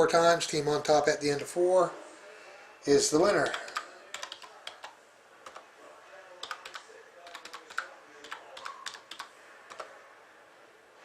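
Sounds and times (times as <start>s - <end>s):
typing on a computer keyboard: 3.4s - 5.7s, 6.4s - 10.0s.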